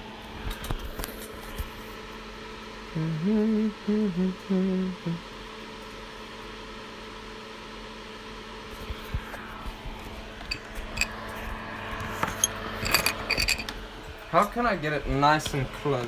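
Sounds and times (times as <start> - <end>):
steady low hum: 0.0 - 16.0
man humming a tune: 2.9 - 5.3.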